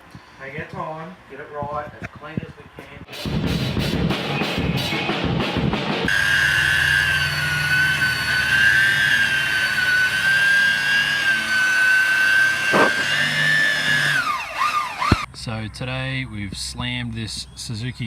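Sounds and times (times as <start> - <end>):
high-pitched mechanical whine: 6.1 - 15.4.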